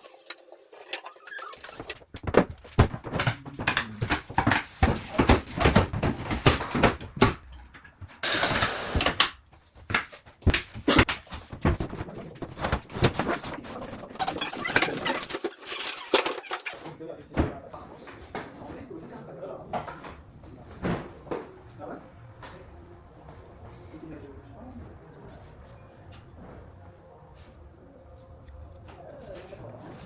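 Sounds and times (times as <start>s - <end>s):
hard objects knocking and clattering: 1.6s - 17.6s
rustling noise: 9.5s - 16.5s.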